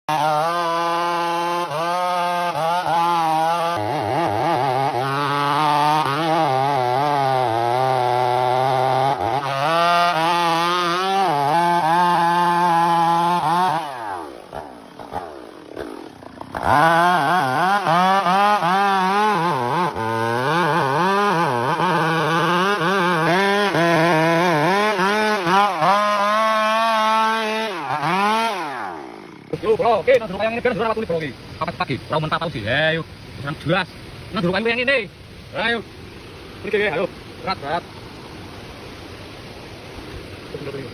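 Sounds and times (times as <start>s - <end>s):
chainsaw cutting timber: 0.1s - 31.0s.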